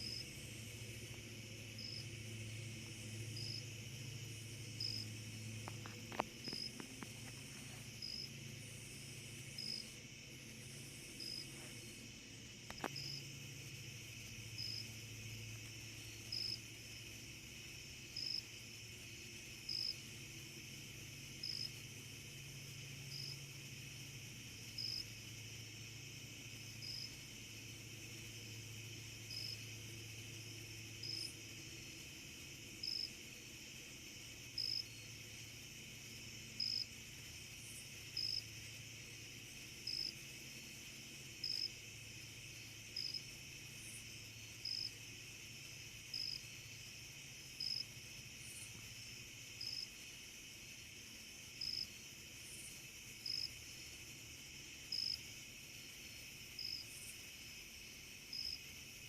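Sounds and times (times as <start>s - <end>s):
low steady hum: 0.0s - 58.0s
insect chirping loudly: 0.0s - 59.0s
insect chorus: 0.0s - 59.0s.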